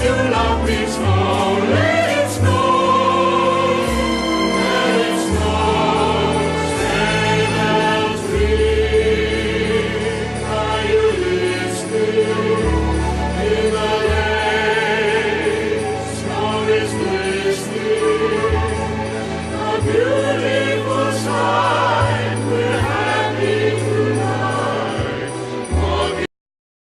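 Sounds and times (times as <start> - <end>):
choral gospel singing: 0.0 - 26.3.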